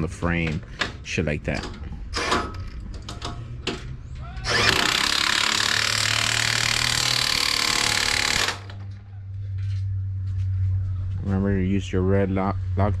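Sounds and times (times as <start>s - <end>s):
power tool running: 4.4s - 8.8s.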